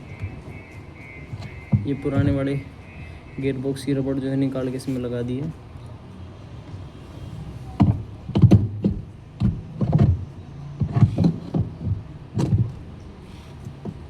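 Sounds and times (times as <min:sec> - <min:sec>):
knocks and thuds of metal parts: 0:01.3 - 0:02.4, 0:07.8 - 0:12.9.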